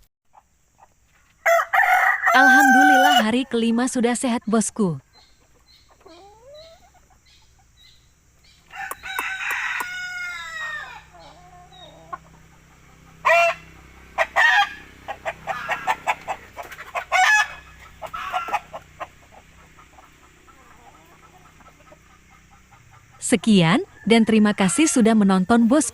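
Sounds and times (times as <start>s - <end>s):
rooster crowing: 1.4s - 3.4s, 8.6s - 12.2s, 13.1s - 16.4s, 17.0s - 18.8s, 23.8s - 25.9s
chicken squawks and clucks: 5.0s - 25.9s.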